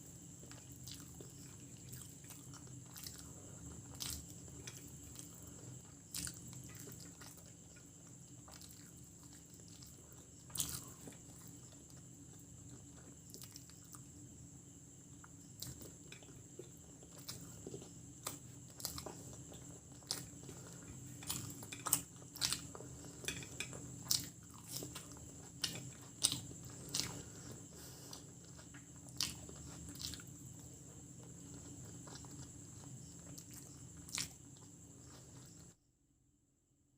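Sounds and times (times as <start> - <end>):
steady background hum: 0.0 - 35.8
close chewing and biting: 15.6 - 35.6.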